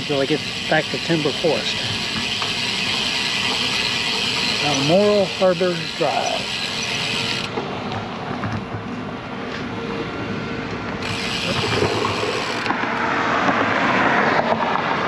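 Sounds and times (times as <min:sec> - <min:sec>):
bicycle freehub ticking: 0:00.0 - 0:07.6, 0:11.0 - 0:12.7
rushing noise: 0:09.1 - 0:15.0.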